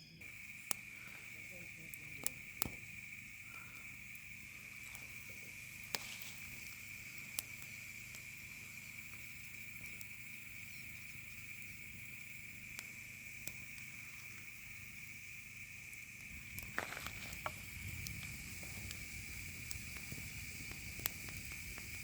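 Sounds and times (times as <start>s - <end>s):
insect chorus: 0.0s - 22.0s
sharp snaps: 0.2s - 5.2s, 12.7s - 14.5s, 16.2s - 22.0s.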